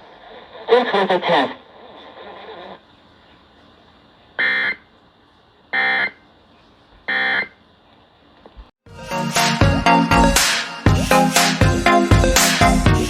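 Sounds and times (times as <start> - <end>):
music: 8.9 - 13.0.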